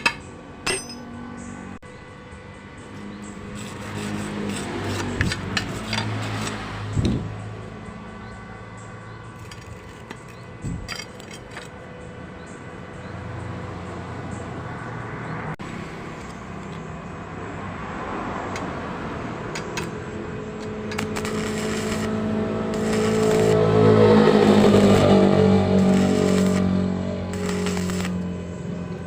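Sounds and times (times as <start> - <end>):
sharp metallic clicks: 19.5 - 20.0, 20.6 - 23.6, 25.8 - 26.7, 27.3 - 28.4
motor humming: 19.5 - 29.0.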